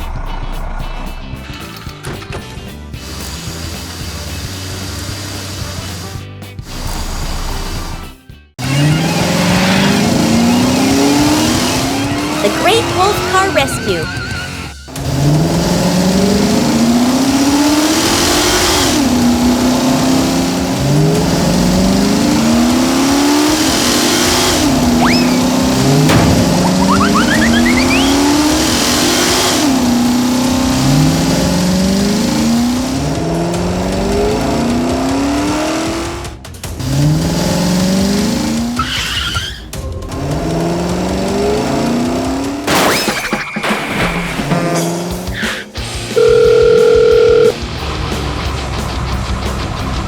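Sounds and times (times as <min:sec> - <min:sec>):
car engine accelerating: 0:00.0 - 0:43.0, 0:44.2 - 0:46.5, 0:47.3 - 0:50.0
tyre squeals: 0:24.9 - 0:25.6, 0:38.8 - 0:39.8.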